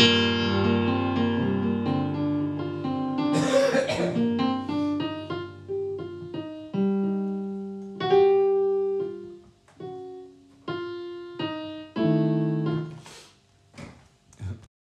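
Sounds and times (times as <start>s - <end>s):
slow jazz piano: 0.0s - 13.4s.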